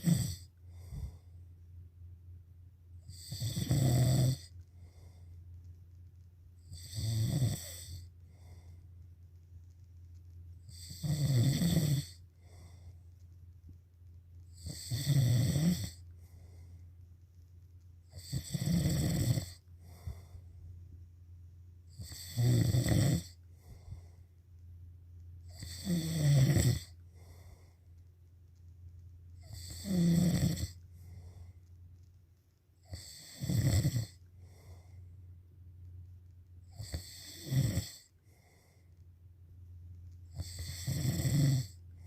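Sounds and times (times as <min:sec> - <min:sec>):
person snoring: 0:00.0 - 0:01.2, 0:03.0 - 0:05.1, 0:06.6 - 0:08.7, 0:10.7 - 0:12.9, 0:14.5 - 0:16.5, 0:18.1 - 0:20.4, 0:21.9 - 0:24.1, 0:25.5 - 0:27.8, 0:29.4 - 0:31.4, 0:32.8 - 0:34.9, 0:36.7 - 0:38.6, 0:40.3 - 0:41.8.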